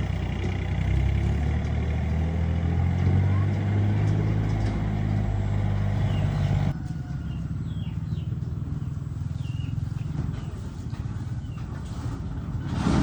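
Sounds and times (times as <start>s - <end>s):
engine running: 0.0s - 13.0s
bird chirps: 5.9s - 10.6s.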